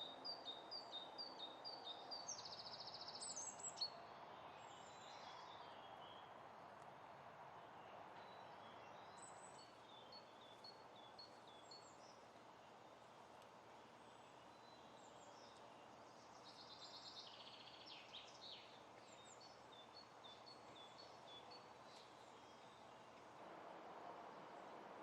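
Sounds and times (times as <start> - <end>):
small birds chirping: 13.8 - 23.2.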